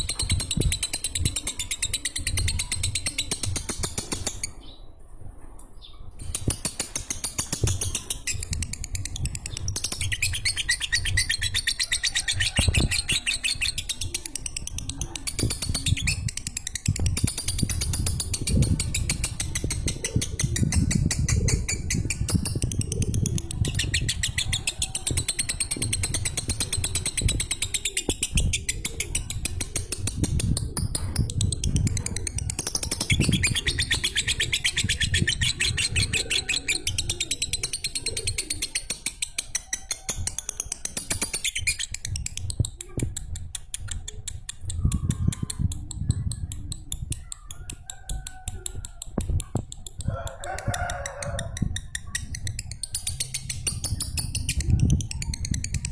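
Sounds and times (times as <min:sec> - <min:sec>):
bird chattering song: 0:00.0 - 0:05.0, 0:05.8 - 0:50.0, 0:51.4 - 0:55.9.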